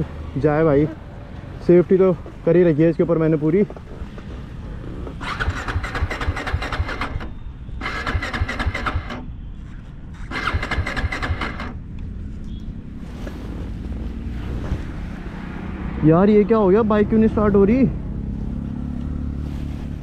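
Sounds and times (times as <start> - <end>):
motorcycle engine cranking: 3.8 - 9.3, 10.2 - 11.9.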